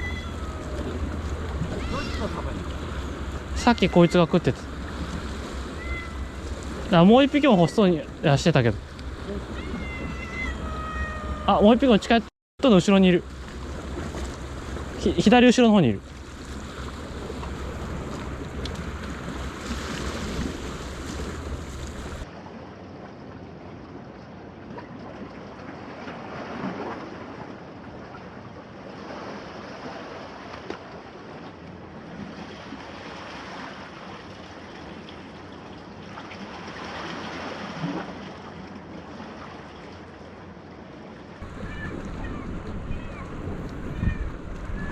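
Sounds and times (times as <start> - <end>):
sea waves washing on shore: 0.0 - 22.4, 28.8 - 44.9
wind buffeting microphone: 41.4 - 44.9.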